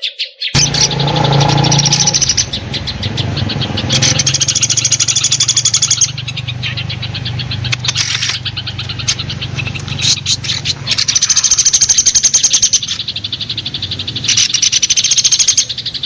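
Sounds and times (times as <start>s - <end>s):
sparrows chirping: 0.0s - 16.0s
low hum: 0.6s - 11.2s.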